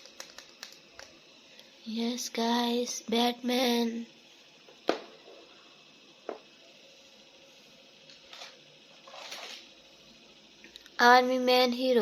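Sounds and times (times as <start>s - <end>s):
plastic toy clicks: 0.0s - 1.1s.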